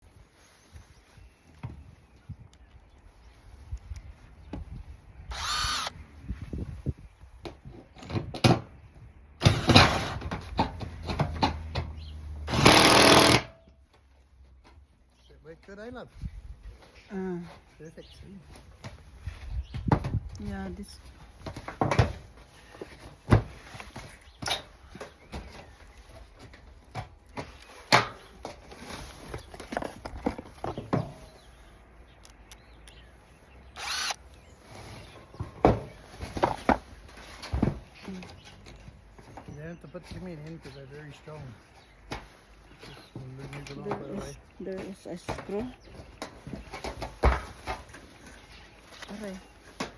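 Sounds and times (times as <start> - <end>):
power drill burst: 5.3 - 5.9, 12.5 - 13.5, 33.8 - 34.2
roofing work knocks and clatter: 7.4 - 14.9, 18.6 - 20.4, 21.0 - 31.6, 34.8 - 40.8, 41.4 - 49.9
roofing material clattering: 9.4 - 12.0.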